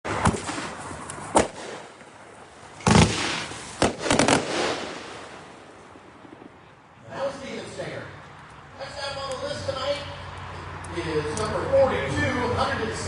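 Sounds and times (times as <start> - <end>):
fireworks banging: 0.1 - 6.7.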